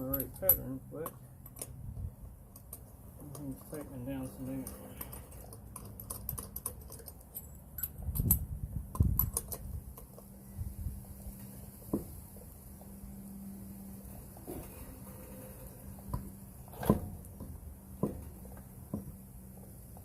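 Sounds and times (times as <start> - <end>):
heavy knocks: 16.8 - 19.2.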